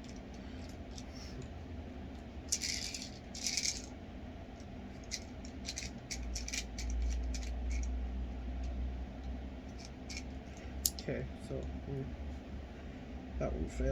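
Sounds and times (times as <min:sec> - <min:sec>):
plastic pellets rattling: 0:02.5 - 0:03.9.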